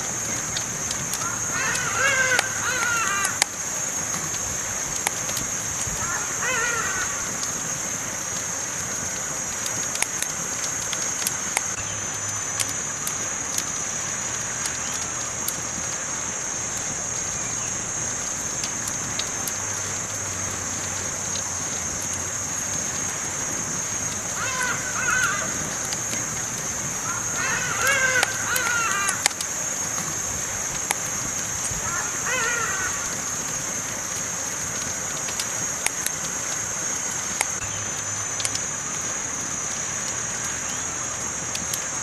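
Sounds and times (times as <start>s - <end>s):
campfire crackling and popping: 0.0s - 42.0s
crow cawing: 1.2s - 3.5s, 6.0s - 7.5s, 24.3s - 25.9s, 27.0s - 29.4s, 31.8s - 33.2s.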